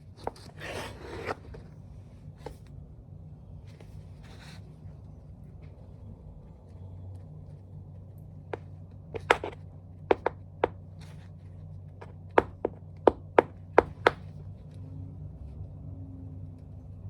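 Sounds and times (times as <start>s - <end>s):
faint shuffling: 0.0s - 10.0s
low steady hum: 0.0s - 17.0s
tap shoes clicking on hard floor: 12.0s - 14.2s.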